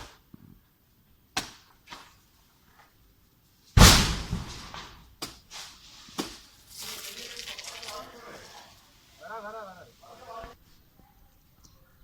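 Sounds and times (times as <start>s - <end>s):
tree crashing to the ground: 3.8s - 5.1s, 6.2s - 8.6s.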